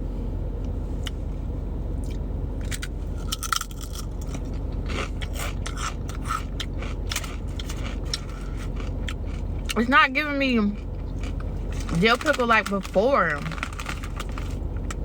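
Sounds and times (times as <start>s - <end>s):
steady low hum: 0.0s - 15.0s
crunching potato chip: 2.1s - 9.8s, 10.7s - 15.0s.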